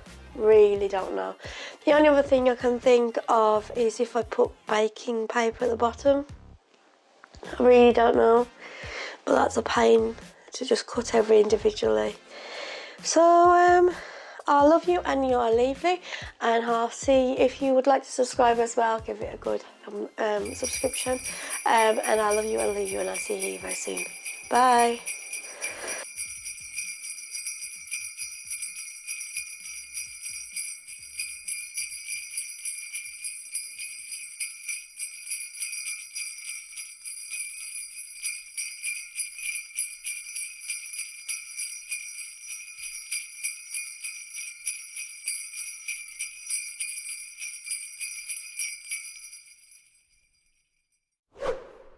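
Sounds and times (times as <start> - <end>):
sleigh bells jingling: 0.0 - 4.3, 20.4 - 50.5.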